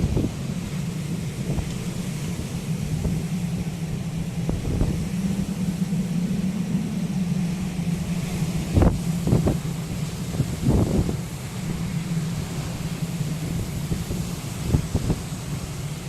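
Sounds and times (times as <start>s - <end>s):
gusts thumping microphone: 0.0s - 16.0s
rain: 0.0s - 16.0s
storm wind buffeting microphone: 0.0s - 16.0s.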